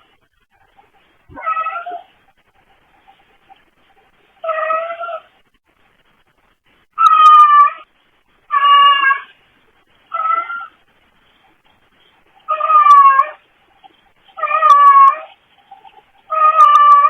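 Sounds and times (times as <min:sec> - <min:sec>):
cat meowing: 0:01.3 - 0:02.1, 0:07.0 - 0:07.9, 0:08.5 - 0:09.3, 0:10.1 - 0:10.7, 0:12.5 - 0:13.4, 0:14.4 - 0:15.3, 0:16.3 - 0:17.0.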